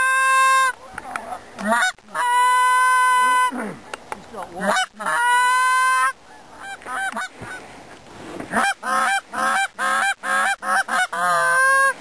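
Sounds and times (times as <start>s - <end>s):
goose honking: 0.0s - 0.8s, 1.6s - 3.8s, 4.6s - 7.6s, 8.5s - 12.0s.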